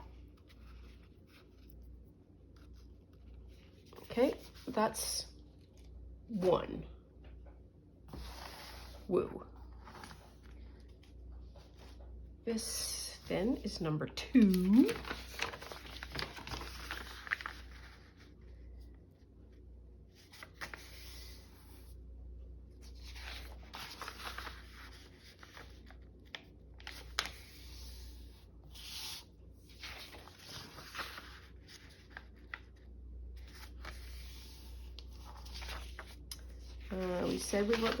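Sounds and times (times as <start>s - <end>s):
paper rustling and scraping: 8.1s - 12.0s, 14.4s - 18.5s, 22.8s - 32.8s, 33.4s - 38.0s.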